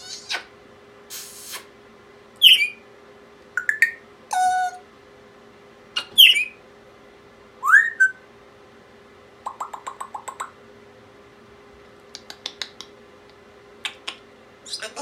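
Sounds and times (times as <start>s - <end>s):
parrot chirps: 0.0s - 0.5s, 2.4s - 2.8s, 3.6s - 4.8s, 6.0s - 6.6s, 7.6s - 8.2s, 9.4s - 10.6s
parrot whistling: 0.0s - 0.5s, 2.4s - 2.8s, 3.6s - 4.8s, 6.0s - 6.6s, 7.6s - 8.2s
parrot clicks: 12.0s - 14.2s.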